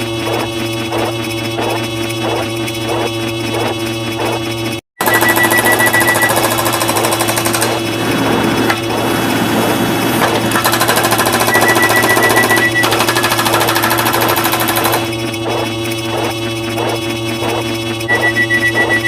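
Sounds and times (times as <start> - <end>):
high beeping alarm tone: 5.0 - 7.2, 10.7 - 14.8, 18.1 - 19.0
rapid rattle of sound effects: 6.2 - 18.0.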